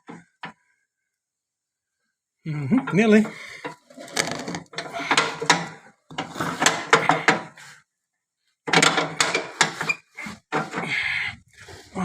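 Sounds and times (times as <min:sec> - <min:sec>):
metal clunking and scraping: 0:03.6 - 0:07.6.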